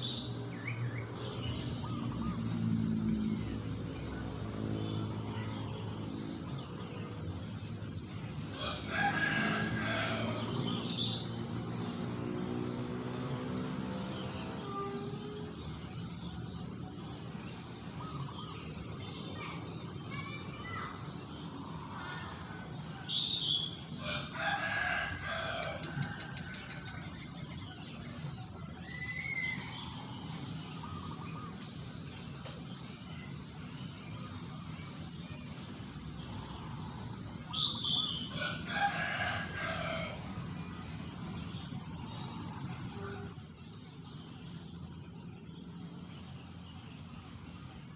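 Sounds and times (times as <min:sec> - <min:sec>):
small birds chirping: 0:00.0 - 0:47.9
rooster crowing: 0:08.6 - 0:10.7, 0:24.0 - 0:27.0, 0:37.6 - 0:40.3.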